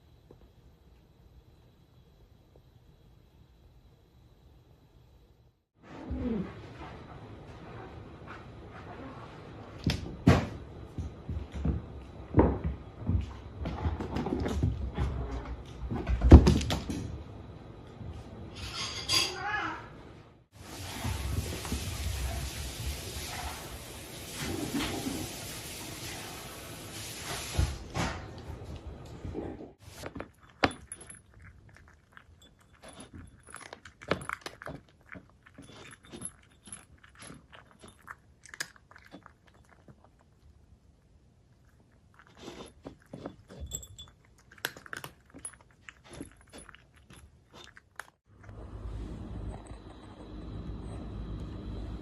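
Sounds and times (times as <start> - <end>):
cat chewing: 30.0 - 48.8.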